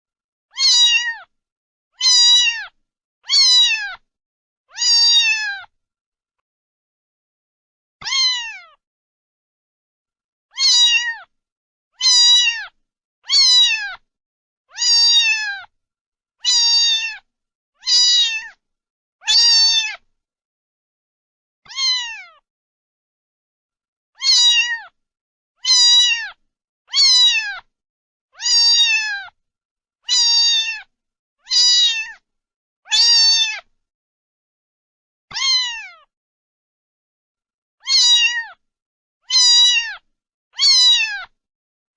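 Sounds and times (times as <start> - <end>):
cat meowing: 0.5 - 1.3, 2.0 - 4.0, 4.7 - 5.7, 8.0 - 8.8, 10.5 - 11.3, 12.0 - 14.0, 14.7 - 15.7, 16.4 - 18.6, 19.2 - 20.0, 21.6 - 22.4, 24.2 - 25.0, 25.6 - 27.7, 28.4 - 29.4, 30.0 - 32.2, 32.9 - 33.7, 35.3 - 36.1, 37.8 - 38.6, 39.2 - 41.4.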